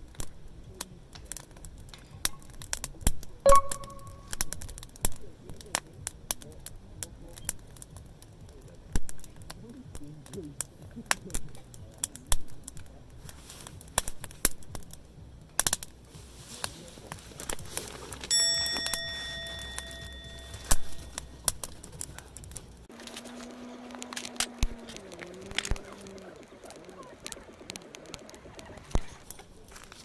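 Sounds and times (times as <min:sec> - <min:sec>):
campfire crackling: 0:00.0 - 0:30.0
metal object struck ringing: 0:03.5 - 0:04.4, 0:18.3 - 0:21.3
low tone stepping down: 0:03.5 - 0:04.5.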